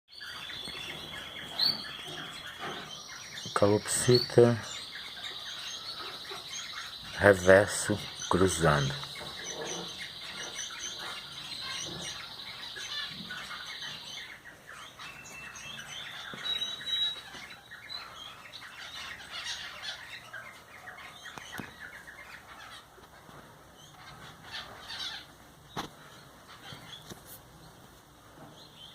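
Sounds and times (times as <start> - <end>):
high bird trill: 0.1 - 23.0
cockatiels chirping and squawking: 0.2 - 27.3.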